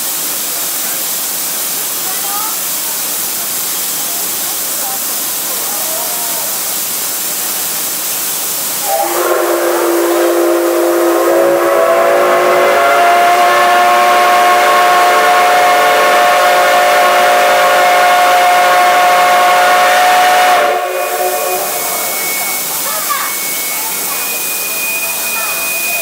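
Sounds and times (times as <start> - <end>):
steam hissing: 0.0 - 26.0
steam whistle blast: 8.8 - 26.0.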